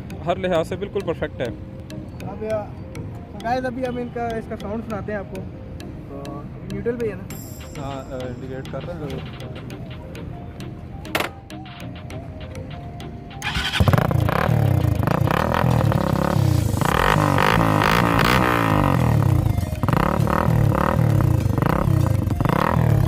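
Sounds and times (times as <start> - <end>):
motorcycle engine revving: 13.4 - 23.0.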